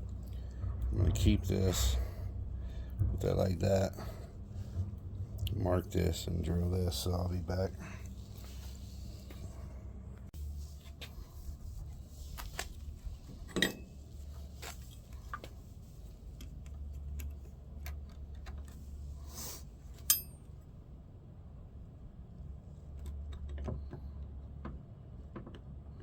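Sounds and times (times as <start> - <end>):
steady low hum: 0.0 - 26.0
metal parts and tools clinking: 20.0 - 20.4.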